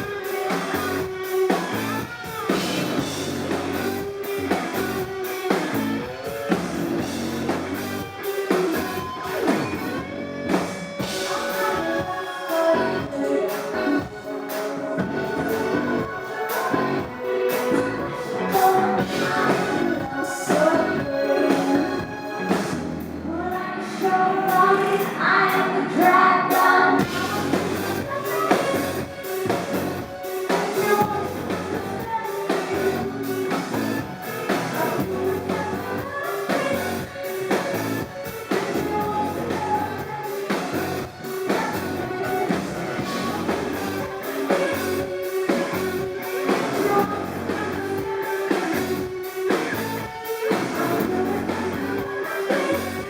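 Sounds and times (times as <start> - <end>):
live electro-rock band: 0.0 - 53.0
person singing: 11.0 - 53.0.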